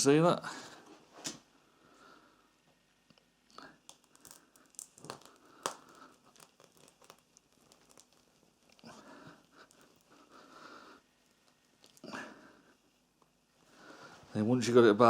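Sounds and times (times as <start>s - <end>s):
faint clicks and creaks: 3.1s - 10.5s, 11.2s - 12.1s.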